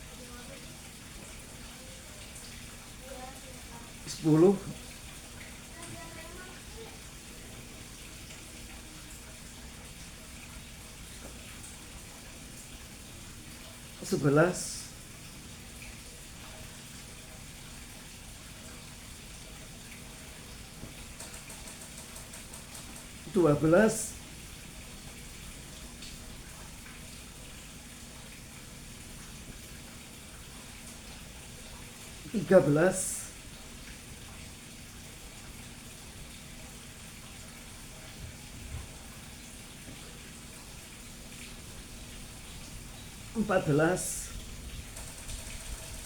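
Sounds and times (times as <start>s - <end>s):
background hiss: 11.6s - 15.6s, 20.6s - 25.2s, 31.6s - 34.2s, 38.8s - 46.0s
faint ticks: 20.9s - 23.2s.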